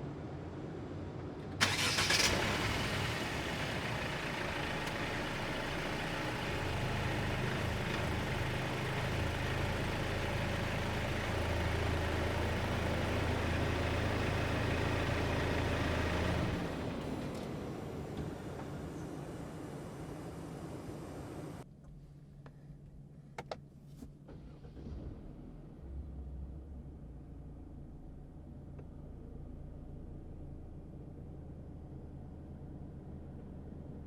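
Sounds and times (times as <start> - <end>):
car engine starting and running: 0.3 - 21.6, 24.1 - 34.0.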